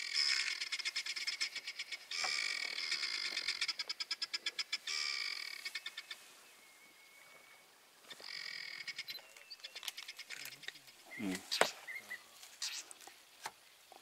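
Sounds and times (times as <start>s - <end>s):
rapid pulsing animal trill calls: 0.0s - 6.2s, 8.1s - 12.9s.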